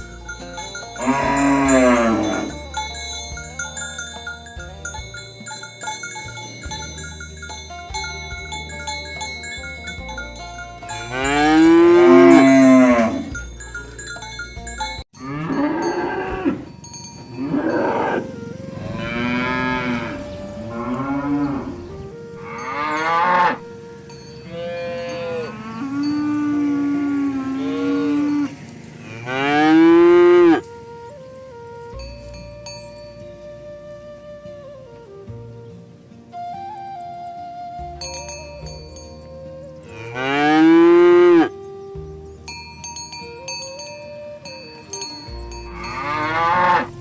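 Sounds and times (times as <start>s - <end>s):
cattle mooing: 0.9s - 2.7s, 10.9s - 13.4s, 15.2s - 23.8s, 24.5s - 30.7s, 39.9s - 41.5s, 45.7s - 47.0s.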